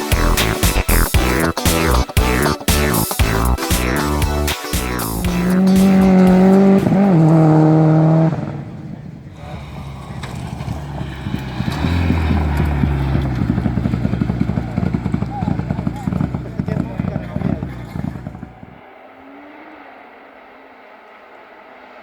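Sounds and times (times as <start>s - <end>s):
low uneven engine rumble: 0.2s - 22.0s
rally car engine at high revs: 5.0s - 22.0s.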